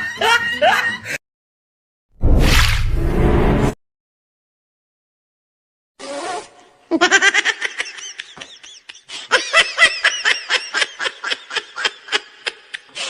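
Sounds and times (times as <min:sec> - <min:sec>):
high-pitched laughing: 0:06.9 - 0:13.0.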